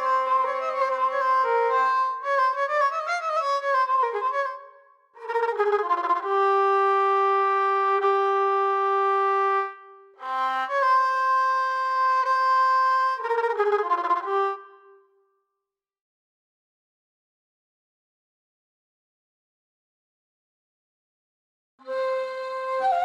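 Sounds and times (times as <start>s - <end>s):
melodic instrument solo: 0.0s - 3.2s.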